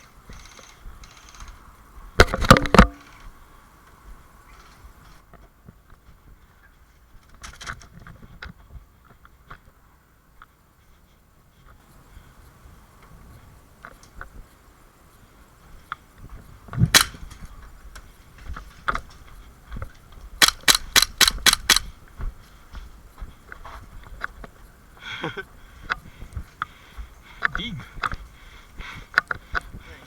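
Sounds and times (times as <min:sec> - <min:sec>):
airsoft pistol shots: 0:16.9 - 0:17.2, 0:20.4 - 0:21.9.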